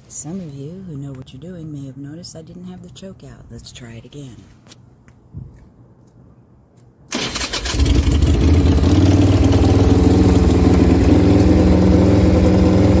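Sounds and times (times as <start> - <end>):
electric starter cranking: 7.1 - 10.0
motorcycle engine idling: 7.7 - 13.0.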